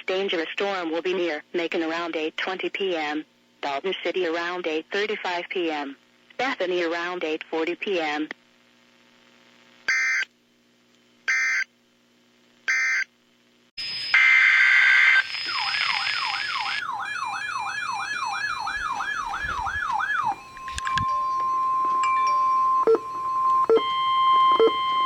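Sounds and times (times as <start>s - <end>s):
faint hum: 0.0s - 25.0s
data bursts: 13.8s - 16.8s
warbling siren-like alert tone: 14.2s - 25.0s.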